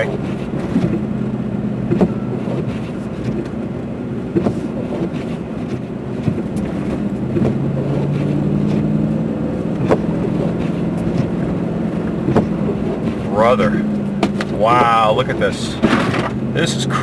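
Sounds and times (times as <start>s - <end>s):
car engine running: 0.0s - 17.0s.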